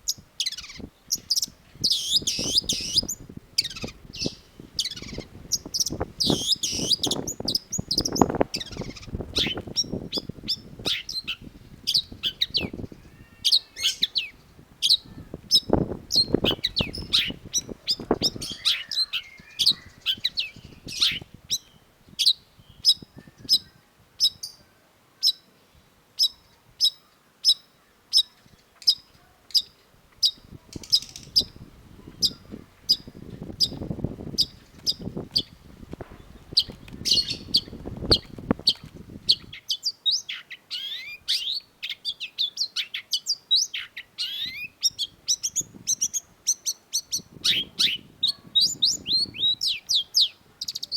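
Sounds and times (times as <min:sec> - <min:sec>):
shrike singing: 0:00.0 - 0:21.8, 0:30.2 - 0:39.6.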